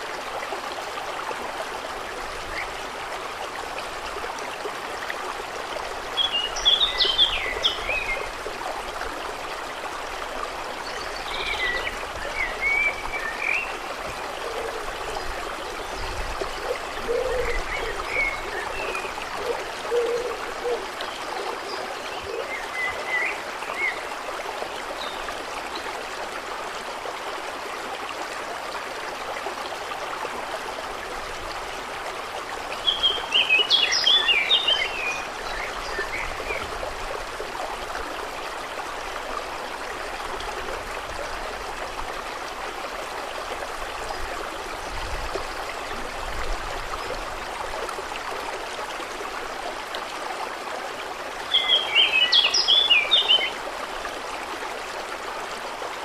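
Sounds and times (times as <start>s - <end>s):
birds singing: 51.5s - 53.6s.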